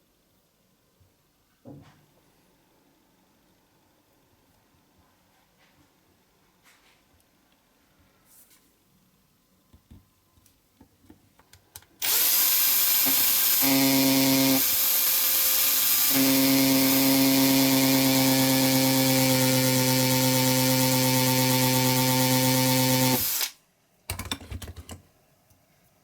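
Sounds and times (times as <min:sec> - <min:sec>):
electric power tool whining: 0:12.0 - 0:23.6.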